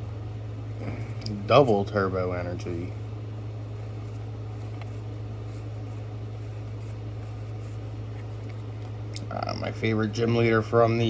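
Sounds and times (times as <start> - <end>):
low hum with faint hiss: 0.0 - 11.0.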